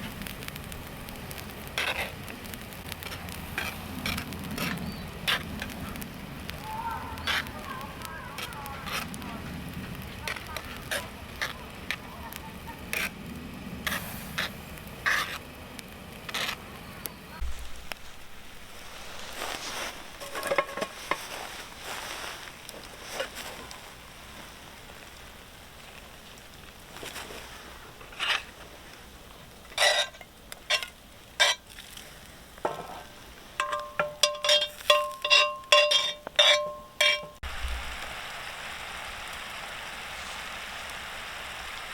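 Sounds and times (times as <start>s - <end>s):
campfire crackling and popping: 0.0s - 41.9s
low steady fire hiss: 0.0s - 41.9s
utensil scraping a pot: 1.8s - 2.2s, 8.4s - 9.2s, 10.3s - 12.0s, 12.9s - 13.1s, 13.8s - 15.4s, 16.3s - 16.6s, 18.9s - 21.6s, 28.1s - 28.6s, 29.7s - 32.0s, 32.7s - 37.4s.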